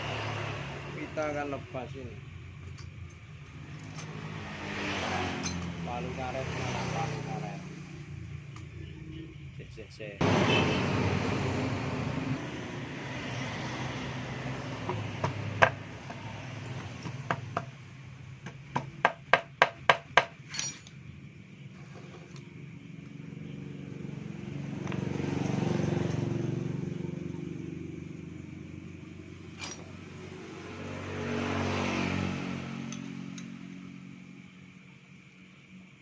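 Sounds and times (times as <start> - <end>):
motor vehicles passing: 0.0 - 9.4, 10.2 - 18.5, 21.6 - 34.8
rubber mallet knocking on metal: 18.4 - 20.4.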